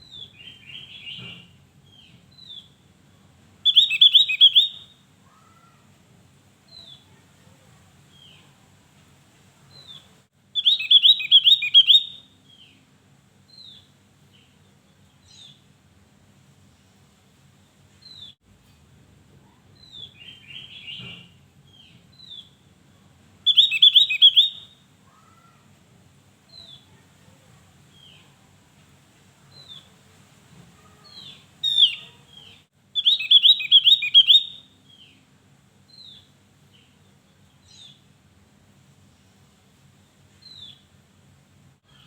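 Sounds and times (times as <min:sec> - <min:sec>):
bird chirping: 0:00.0 - 0:02.8, 0:03.6 - 0:05.7, 0:09.7 - 0:12.8, 0:19.8 - 0:22.6, 0:23.5 - 0:25.5, 0:31.0 - 0:35.2.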